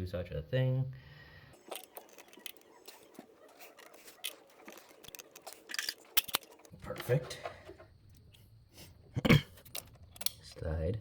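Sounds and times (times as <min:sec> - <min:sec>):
hardware clicking and tapping: 0:01.6 - 0:08.2.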